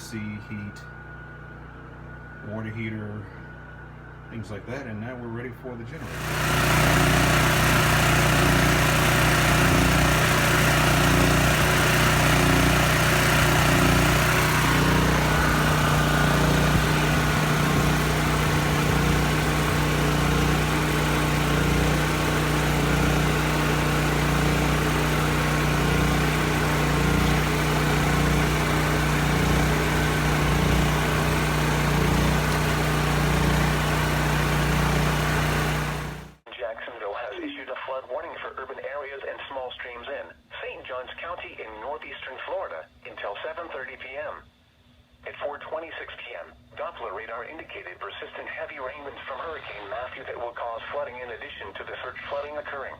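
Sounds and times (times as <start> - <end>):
portable generator engine running: 5.9 - 36.4.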